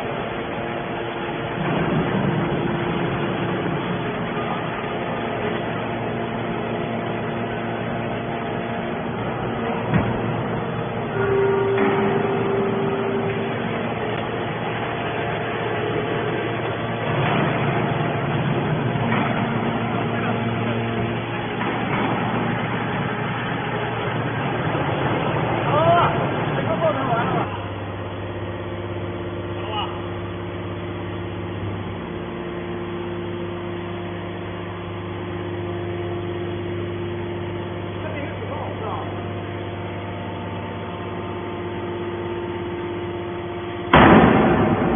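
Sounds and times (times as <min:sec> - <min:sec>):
scrap baler machine running: 0:00.0 - 0:44.9
held mechanical tone: 0:11.0 - 0:14.9.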